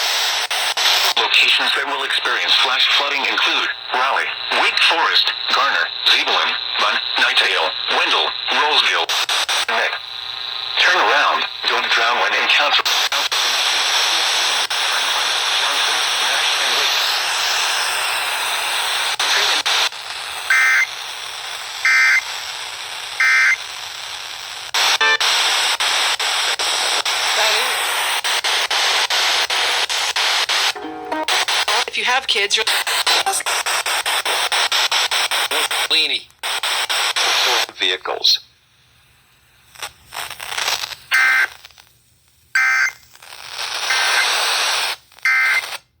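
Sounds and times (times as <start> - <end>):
radio static: 0.0 - 38.6, 39.8 - 41.9, 42.6 - 45.8
buzzy digital data bursts: 20.5 - 20.9, 43.8 - 44.5.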